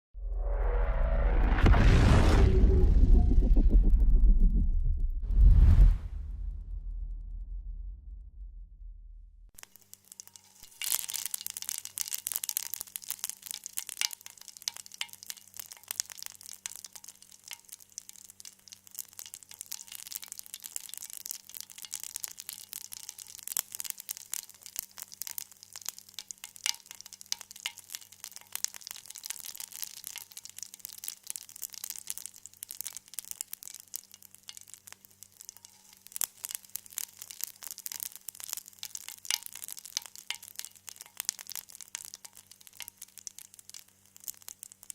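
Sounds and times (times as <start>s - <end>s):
food frying in oil: 9.5s - 44.9s.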